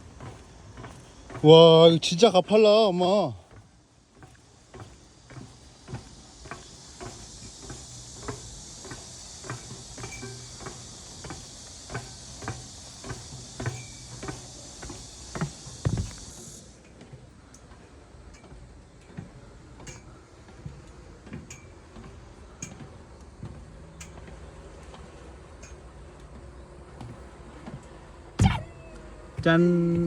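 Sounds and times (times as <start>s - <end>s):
footsteps on rocky trail: 0.0s - 8.2s, 15.0s - 16.5s, 28.4s - 28.8s
steady high hiss: 0.0s - 16.9s
heavy thump: 15.4s - 16.3s, 28.4s - 28.8s.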